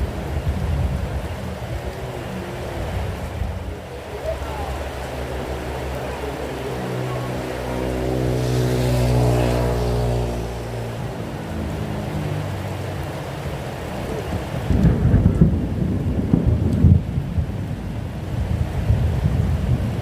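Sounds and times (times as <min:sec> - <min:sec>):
steady rain: 0:00.0 - 0:20.0
vehicle passing on wet road: 0:00.0 - 0:20.0
low rumble of thunder: 0:13.9 - 0:20.0.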